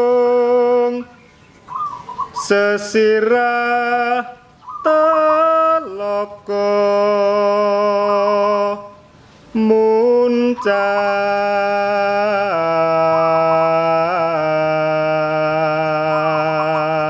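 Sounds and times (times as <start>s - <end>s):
man chanting: 0.0s - 1.3s, 2.4s - 17.0s
dove cooing: 1.1s - 2.6s, 4.6s - 5.6s, 10.5s - 17.0s.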